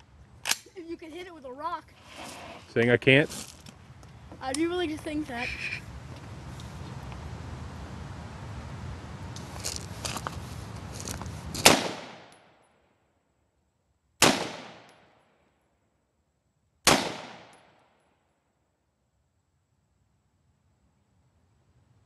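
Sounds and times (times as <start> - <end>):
faint shuffling: 0.8 - 7.0, 9.4 - 11.6
rifle shots: 11.6 - 12.3, 14.2 - 15.0, 16.8 - 17.8
gunshot echo: 11.6 - 12.4, 14.2 - 15.1, 16.9 - 17.8.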